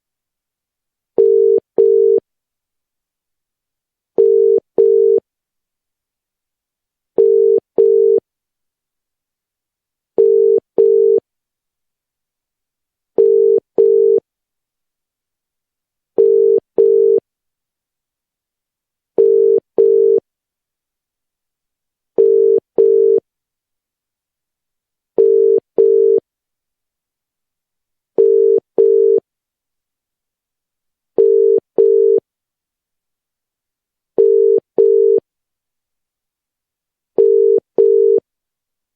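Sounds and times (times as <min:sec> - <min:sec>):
telephone ringback tone: 0:16.2 - 0:17.2, 0:19.2 - 0:20.2, 0:22.2 - 0:23.2, 0:25.2 - 0:26.2, 0:28.2 - 0:29.2, 0:31.2 - 0:32.2, 0:34.2 - 0:35.2, 0:37.2 - 0:38.2.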